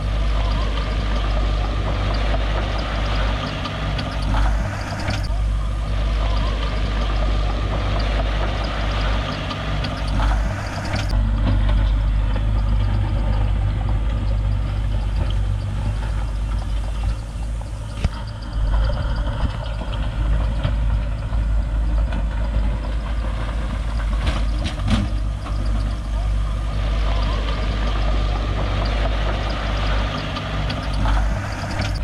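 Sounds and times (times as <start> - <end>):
diesel engine rumbling: 0.0 - 32.0.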